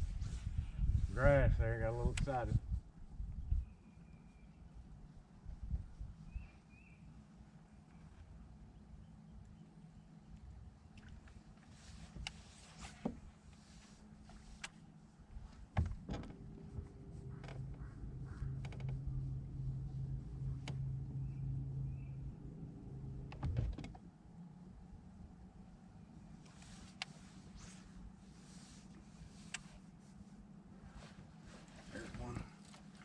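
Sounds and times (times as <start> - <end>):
electric trolling motor humming: 15.8 - 25.4.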